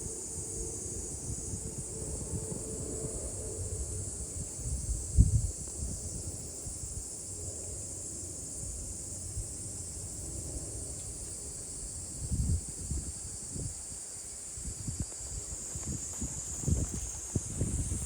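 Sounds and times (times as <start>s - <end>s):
wind buffeting microphone: 0.0s - 7.0s, 11.9s - 18.0s
insect chorus: 0.0s - 18.0s.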